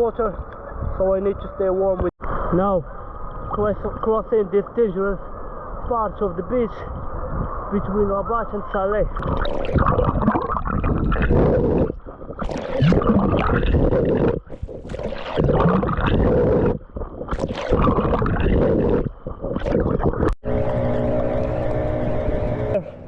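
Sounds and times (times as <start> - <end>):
underwater bubbly gurgles: 9.0 - 20.4
water splashing from swimming: 9.0 - 20.4.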